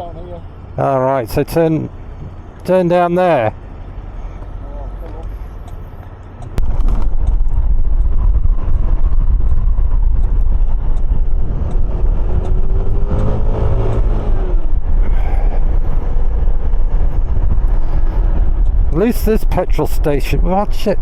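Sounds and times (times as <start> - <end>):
wind rumble on microphone: 6.5 - 21.0.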